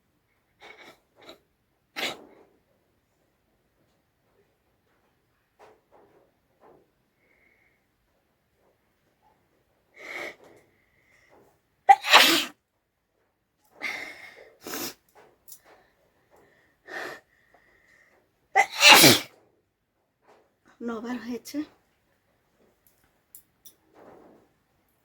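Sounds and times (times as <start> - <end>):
person sneezing: 11.9 - 12.5, 18.6 - 19.3.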